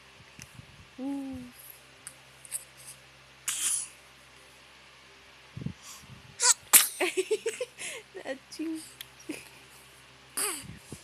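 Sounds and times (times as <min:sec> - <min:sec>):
loud sneeze: 0:06.4 - 0:07.0.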